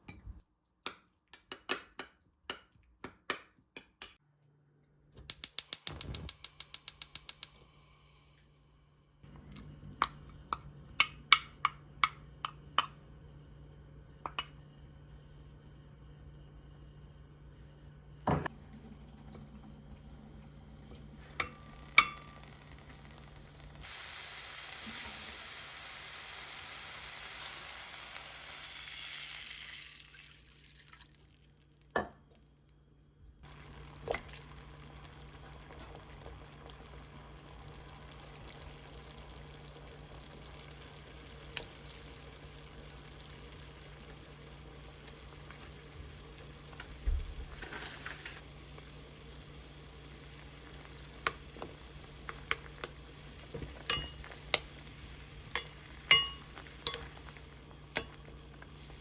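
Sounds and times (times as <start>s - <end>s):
food sizzling in a pan: 20.5s - 31.7s, 33.4s - 59.0s.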